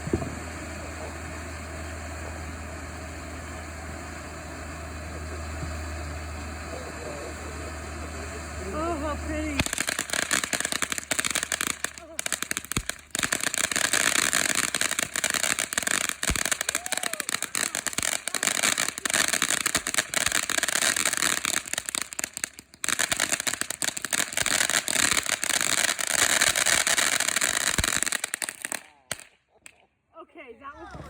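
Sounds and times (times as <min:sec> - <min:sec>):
firework crackling: 0:00.0 - 0:29.4.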